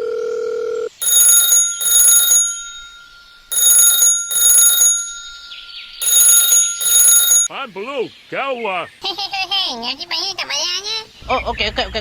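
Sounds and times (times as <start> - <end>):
shrill electronic ringing: 1.0 - 7.5.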